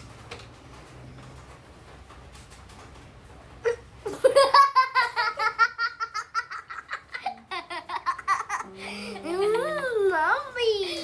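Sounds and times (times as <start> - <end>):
young child laughing: 3.7 - 8.8.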